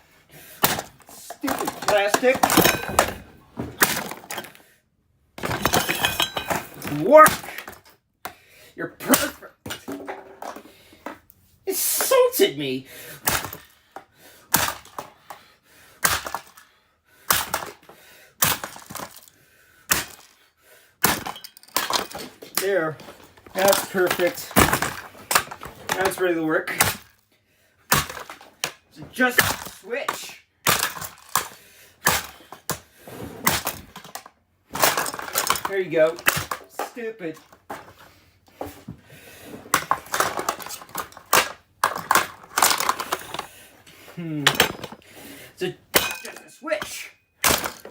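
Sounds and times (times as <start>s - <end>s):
hard plastic knocking and cracking: 0.6s - 4.6s, 21.0s - 26.2s, 27.9s - 43.6s, 44.4s - 45.1s
plastic cracking and crunching: 0.6s - 4.6s, 33.4s - 38.1s, 39.7s - 43.6s.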